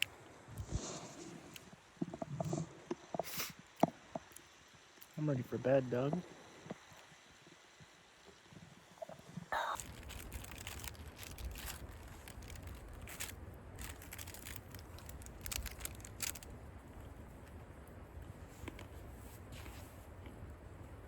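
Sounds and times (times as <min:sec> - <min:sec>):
fabric rustling and crinkling: 0:09.2 - 0:16.5.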